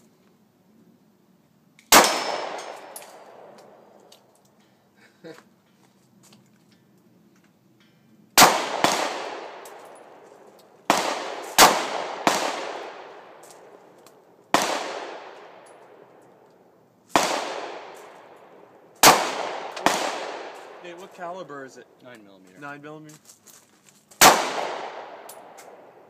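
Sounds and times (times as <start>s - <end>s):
gunshots echoing: 1.9s - 4.0s, 8.4s - 10.2s, 10.8s - 13.8s, 14.5s - 16.1s, 17.1s - 21.7s, 24.2s - 26.0s.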